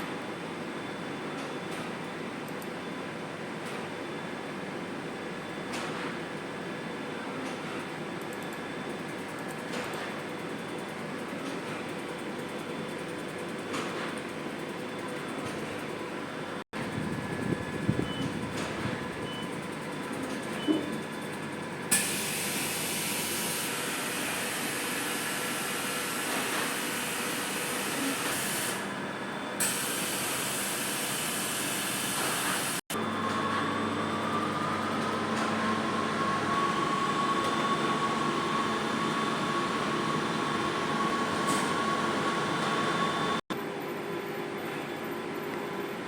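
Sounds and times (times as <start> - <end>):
textile printer mechanical hum: 0.0 - 46.0
motor whine: 31.6 - 43.4.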